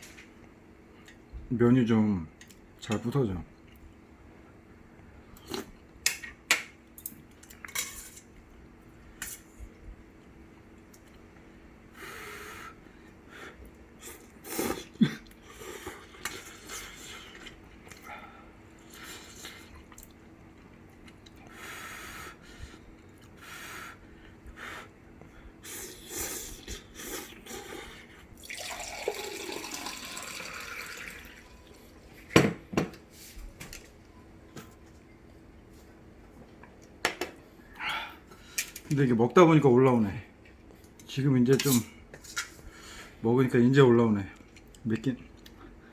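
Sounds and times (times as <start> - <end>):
slurping noodles: 25.6 - 28.0.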